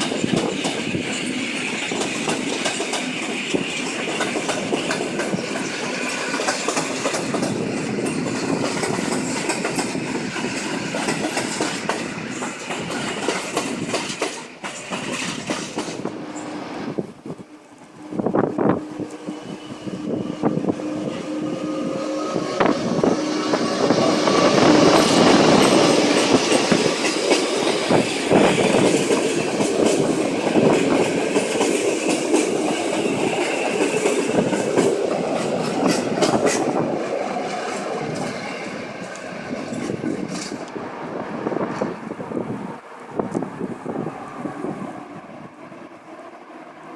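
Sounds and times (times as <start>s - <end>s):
wheels clattering over rail joints: 0.0s - 17.0s, 23.8s - 40.8s
passenger train passing: 0.0s - 46.9s.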